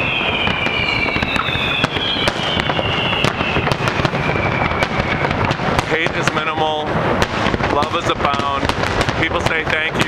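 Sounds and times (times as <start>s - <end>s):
falling firework whistles: 0.0s - 7.6s
fireworks bangs and crackles: 0.0s - 10.0s.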